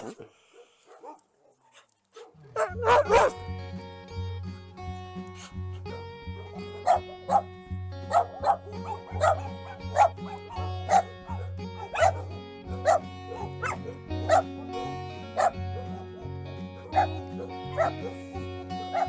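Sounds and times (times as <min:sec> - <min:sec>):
dog barking: 0:00.0 - 0:03.4, 0:05.9 - 0:07.5, 0:08.1 - 0:16.2, 0:16.8 - 0:18.3
background music: 0:02.6 - 0:19.0.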